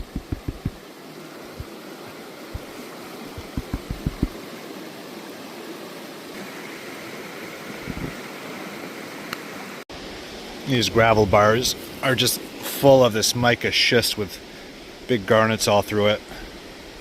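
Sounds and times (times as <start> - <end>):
soft low thumps: 0.0 - 0.8, 3.3 - 4.4
river water flowing: 0.0 - 17.0.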